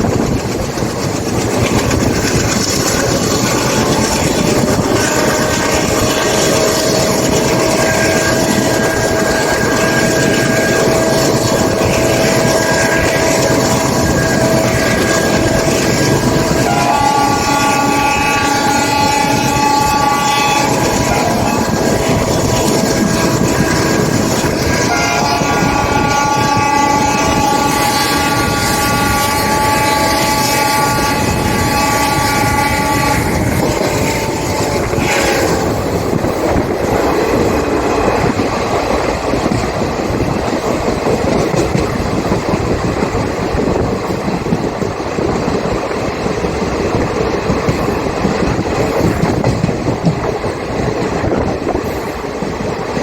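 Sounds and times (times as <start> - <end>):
moving train running noise: 0.0 - 53.0
locomotive horn chord: 3.6 - 35.8.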